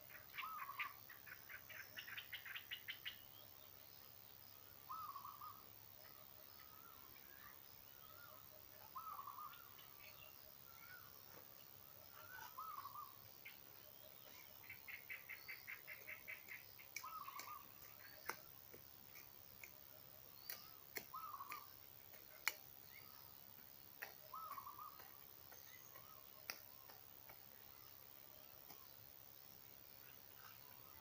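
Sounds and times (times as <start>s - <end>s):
songbirds calling: 0.0s - 31.0s
sharp clicks: 20.4s - 22.7s, 25.9s - 27.4s.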